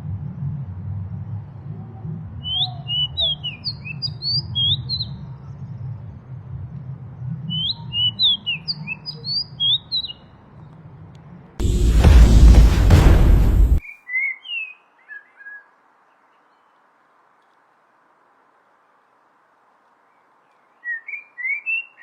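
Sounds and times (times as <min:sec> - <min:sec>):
loud rushing noise: 0:11.6 - 0:13.8
low rumble: 0:11.6 - 0:13.8.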